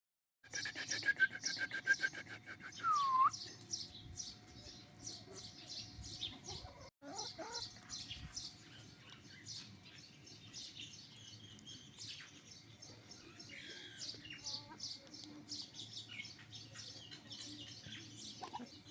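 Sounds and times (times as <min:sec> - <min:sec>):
small birds chirping: 0:00.5 - 0:18.9.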